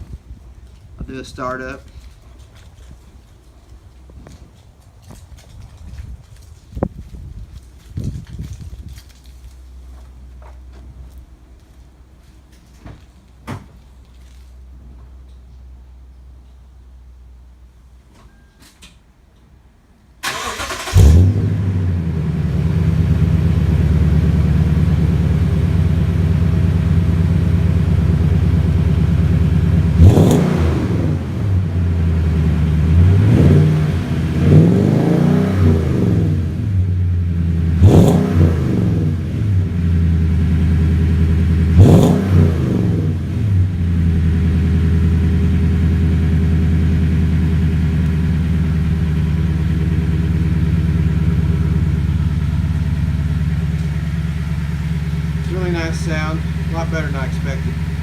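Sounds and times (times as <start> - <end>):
engine revving: 20.2 - 58.0
truck engine starting and idling: 20.2 - 58.0.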